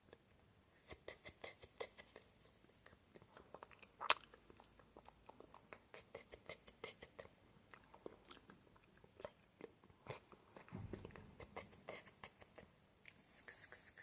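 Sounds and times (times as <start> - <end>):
lip and tongue clicks: 1.8 - 13.3
low thump: 10.7 - 11.4.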